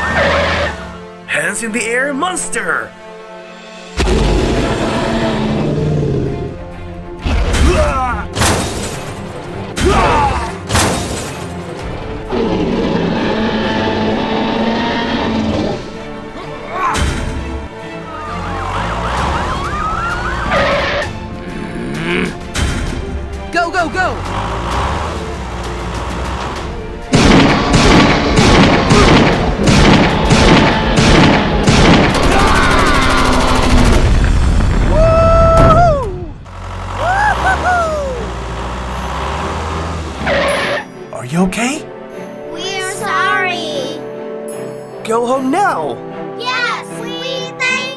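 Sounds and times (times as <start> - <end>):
background music: 0.0 - 47.9
cartoon booms: 27.2 - 36.4
police siren: 35.2 - 39.3.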